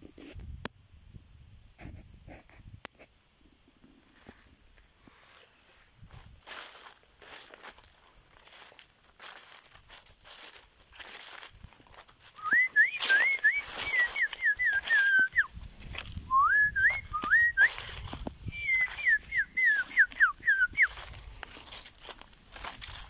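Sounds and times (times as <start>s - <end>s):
songbird whistling: 12.4s - 15.5s, 16.2s - 21.1s.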